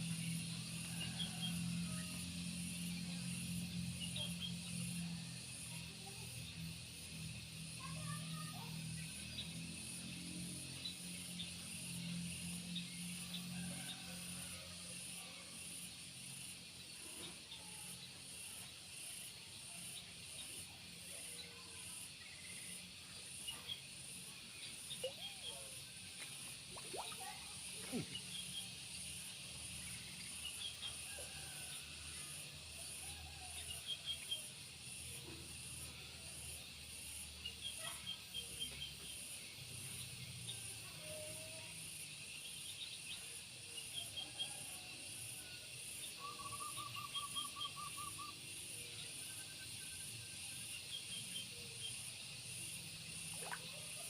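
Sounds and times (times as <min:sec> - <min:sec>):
faint chirps: 0:17.0 - 0:32.4, 0:45.4 - 0:54.0.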